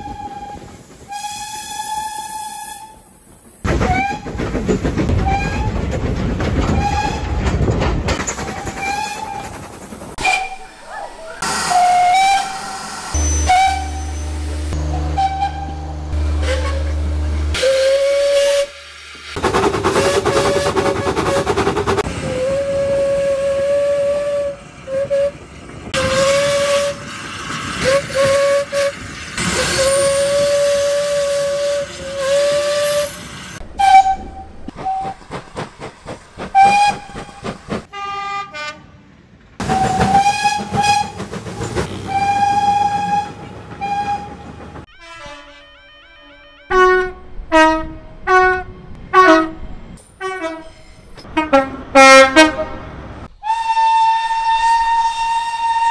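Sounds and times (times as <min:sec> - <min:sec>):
steam locomotive whistle blasts: 0:00.0 - 0:03.0, 0:10.2 - 0:19.0, 0:19.9 - 0:21.6, 0:22.2 - 0:25.4, 0:26.0 - 0:27.1, 0:27.8 - 0:35.2, 0:36.6 - 0:38.8, 0:39.6 - 0:41.3, 0:42.0 - 0:49.6, 0:53.4 - 0:55.9
steam hissing: 0:08.8 - 0:25.2
higher-pitched whistle: 0:10.2 - 0:15.8.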